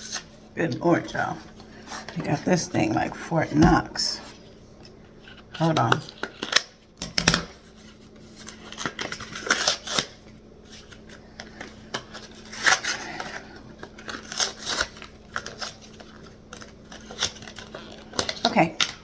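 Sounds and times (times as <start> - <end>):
plastic packaging crinkling and snapping: 4.8 - 19.0.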